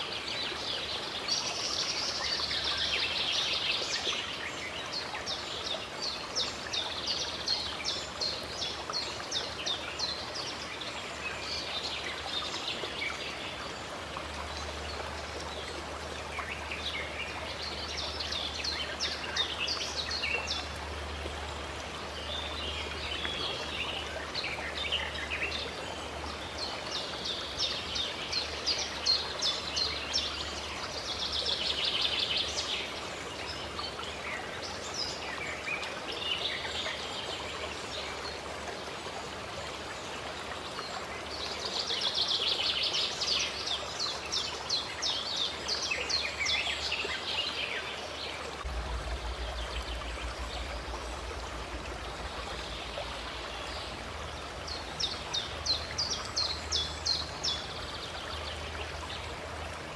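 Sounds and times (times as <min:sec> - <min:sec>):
fountain water flowing: 0:00.0 - 0:59.9.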